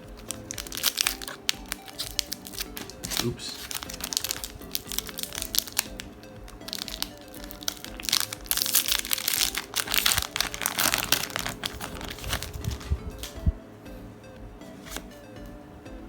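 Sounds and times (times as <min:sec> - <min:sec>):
background music: 0:00.0 - 0:16.0
foil wrapper crinkling and tearing: 0:00.2 - 0:13.4.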